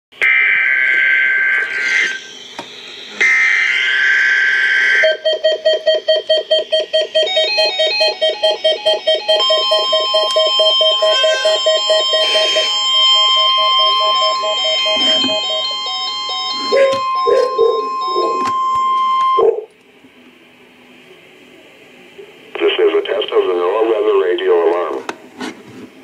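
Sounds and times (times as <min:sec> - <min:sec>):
steady high alert tone: 0:01.3 - 0:19.7
data tone bursts: 0:01.4 - 0:19.7
rapid electronic alert beeping: 0:01.6 - 0:19.7.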